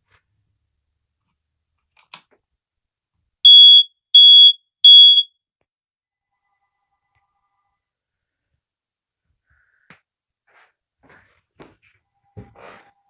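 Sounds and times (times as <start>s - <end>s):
smoke alarm beeps: 3.4s - 5.3s.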